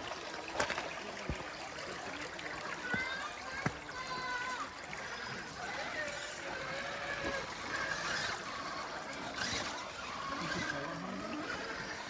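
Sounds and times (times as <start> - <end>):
stream trickling over rocks: 0.0 - 12.0.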